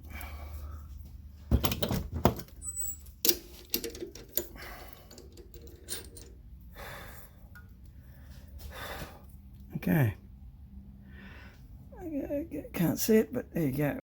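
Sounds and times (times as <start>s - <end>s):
metal parts and tools handled: 1.6s - 6.4s.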